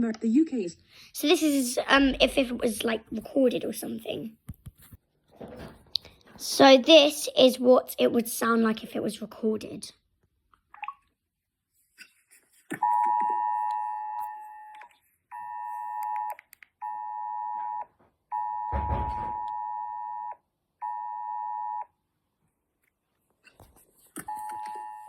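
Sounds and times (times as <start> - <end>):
thump: 18.7 - 19.5.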